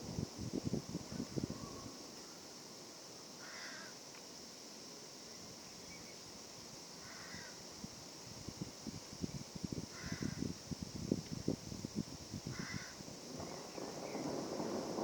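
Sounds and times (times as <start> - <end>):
steady high hiss: 0.0 - 15.0
crow cawing faintly: 3.4 - 4.0, 7.0 - 7.6, 9.9 - 10.4, 12.5 - 13.0.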